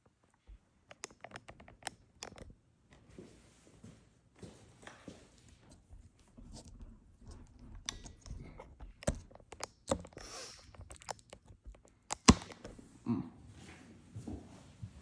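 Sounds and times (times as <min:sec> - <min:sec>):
clicks and knocks: 0:06.5 - 0:12.7.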